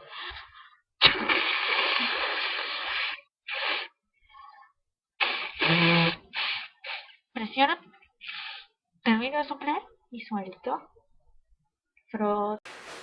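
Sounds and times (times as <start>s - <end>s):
person blowing nose: 1.1s - 4.0s, 5.2s - 7.2s.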